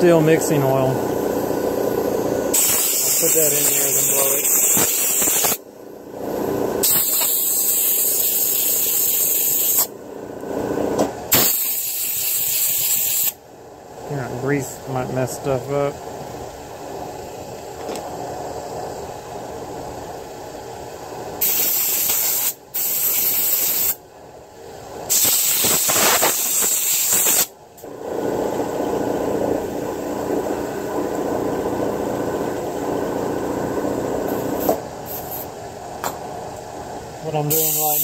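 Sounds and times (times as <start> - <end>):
mechanical hum: 0.0 - 38.0
compressed air blasts hissing: 2.5 - 5.6, 6.8 - 9.9, 11.3 - 13.4, 21.4 - 24.0, 25.1 - 27.5, 34.6 - 35.5, 37.4 - 38.0.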